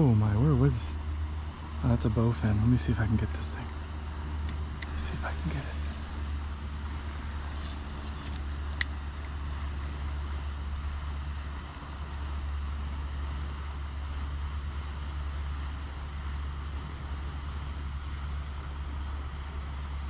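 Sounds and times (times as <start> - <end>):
distant road traffic rumble: 0.0 - 20.0
sharp click: 8.1 - 9.4.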